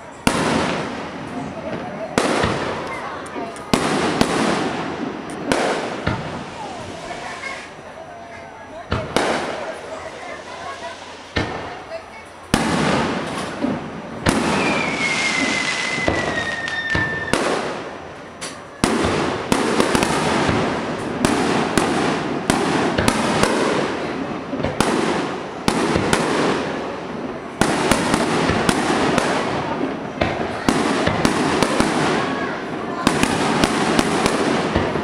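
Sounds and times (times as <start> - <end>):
firework whistle falling in pitch: 14.5 - 17.4.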